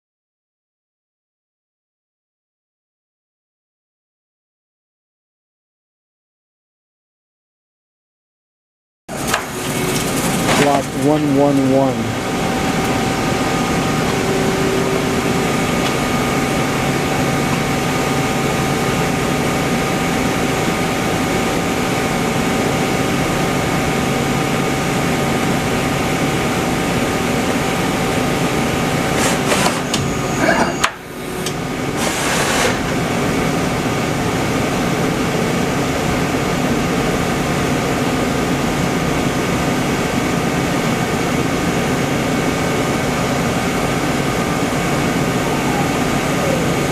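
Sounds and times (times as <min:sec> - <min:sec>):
lathe machine hum with whine: 0:09.1 - 0:46.9.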